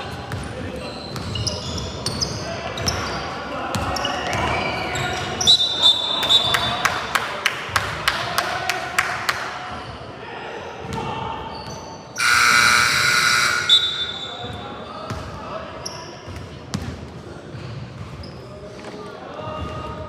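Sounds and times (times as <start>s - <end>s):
sneaker squeaks: 0.8s - 3.2s, 11.5s - 15.2s
game buzzer: 12.2s - 14.5s.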